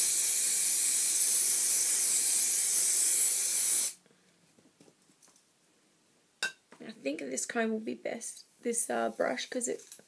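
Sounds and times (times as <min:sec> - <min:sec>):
aerosol spray hissing: 0:00.0 - 0:04.0.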